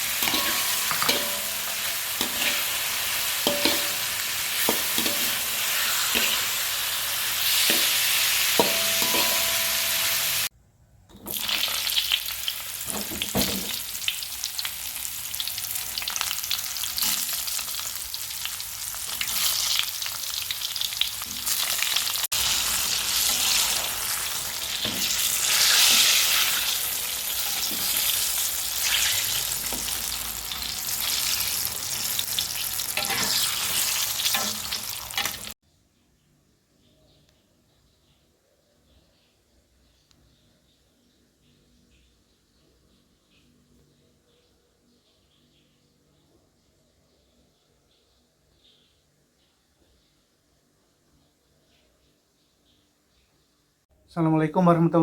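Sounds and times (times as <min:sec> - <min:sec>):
food sizzling in hot oil: 0:00.0 - 0:10.5, 0:11.1 - 0:35.6
spatula scraping a pan: 0:00.1 - 0:10.4, 0:22.5 - 0:35.5.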